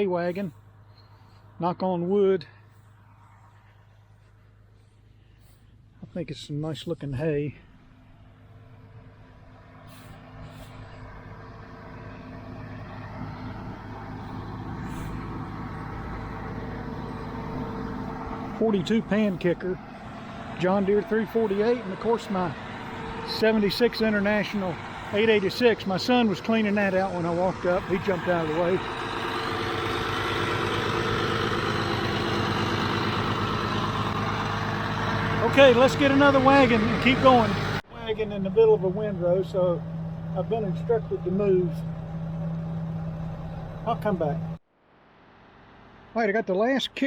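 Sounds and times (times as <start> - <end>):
diesel tractor running: 0.0 - 47.0
square baler: 17.4 - 37.8.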